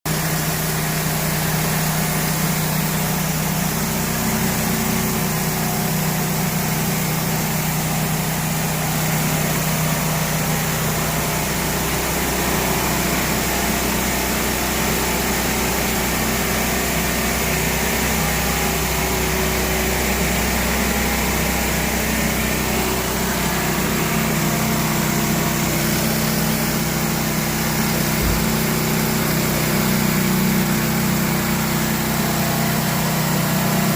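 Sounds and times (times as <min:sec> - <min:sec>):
pressure washer engine running: 0:00.1 - 0:33.9
high-pressure water spraying: 0:21.4 - 0:33.9.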